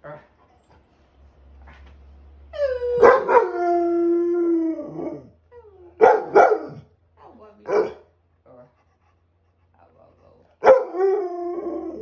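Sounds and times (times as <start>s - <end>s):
dog howling: 2.6s - 5.4s, 10.6s - 12.0s
dog barking and yipping: 3.0s - 3.7s, 6.0s - 6.8s, 10.6s - 11.0s.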